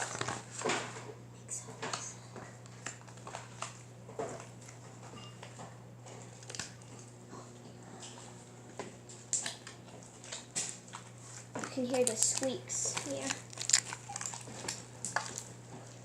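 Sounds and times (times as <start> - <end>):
slime squishing and squeaking: 11.9 - 15.4.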